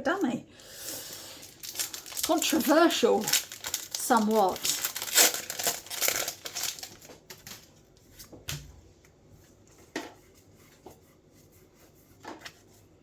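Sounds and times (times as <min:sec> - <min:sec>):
cards rustling: 0:01.4 - 0:07.7.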